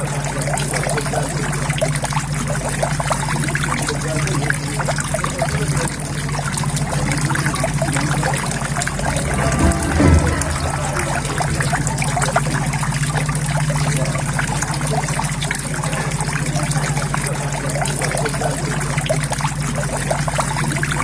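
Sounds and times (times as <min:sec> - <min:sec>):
water trickling into pond: 0:00.0 - 0:09.1, 0:12.9 - 0:21.0
low hum: 0:06.8 - 0:13.5.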